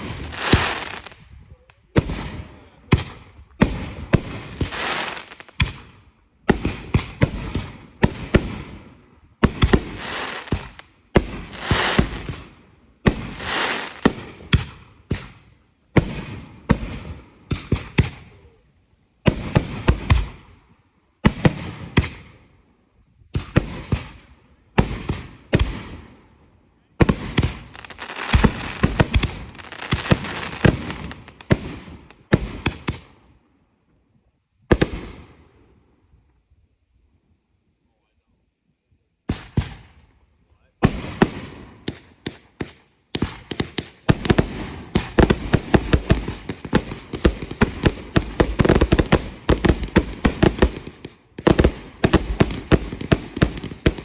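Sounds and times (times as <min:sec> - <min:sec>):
fireworks bangs: 0:00.0 - 0:01.3, 0:01.9 - 0:05.9, 0:06.5 - 0:15.4, 0:27.0 - 0:33.1, 0:40.8 - 0:54.0
fireworks crackling: 0:00.0 - 0:02.4, 0:03.0 - 0:05.9, 0:09.4 - 0:15.4, 0:27.0 - 0:33.1, 0:40.9 - 0:54.0.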